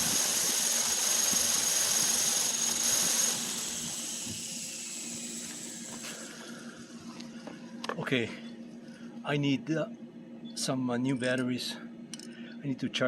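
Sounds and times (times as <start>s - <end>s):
model helicopter rotors whining: 0.0s - 7.2s.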